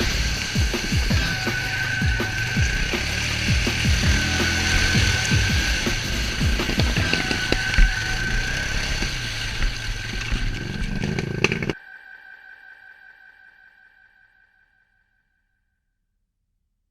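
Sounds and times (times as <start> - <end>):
atv engines whining: 0.0 - 11.8
faint ringing tone: 11.8 - 15.8.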